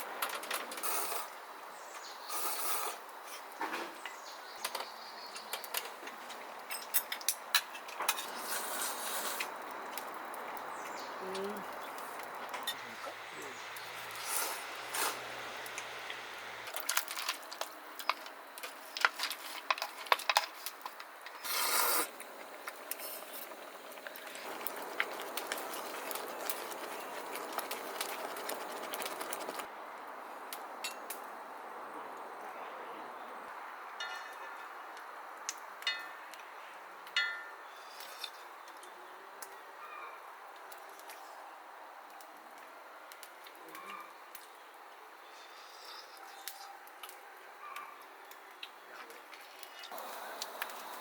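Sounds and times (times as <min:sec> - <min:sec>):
rustling: 0:16.7 - 0:29.7.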